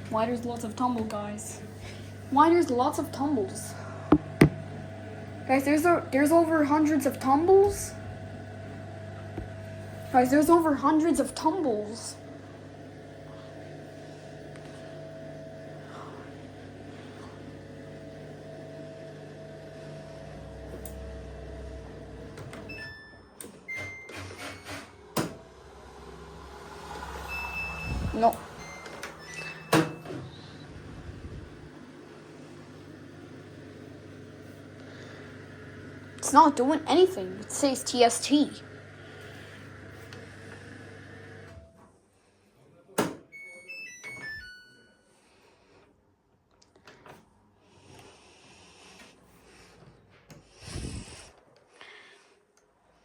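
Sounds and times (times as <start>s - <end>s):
washing machine motor hum: 0.0s - 41.8s
drum tumbling: 4.1s - 4.7s
washing machine electronic jingle: 22.7s - 25.1s, 27.1s - 30.8s, 43.3s - 45.2s
low hum: 25.4s - 29.4s
brief high tones: 43.4s - 45.1s.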